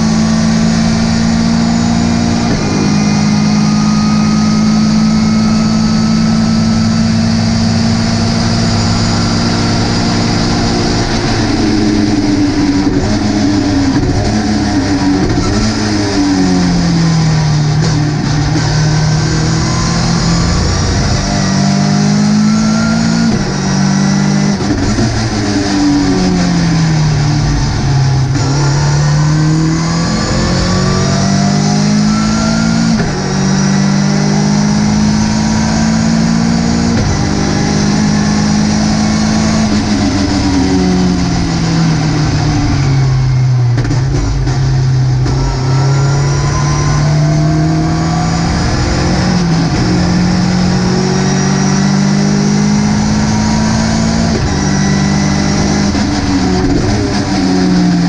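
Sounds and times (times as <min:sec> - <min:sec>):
race car engine revving: 0:00.0 - 0:58.0.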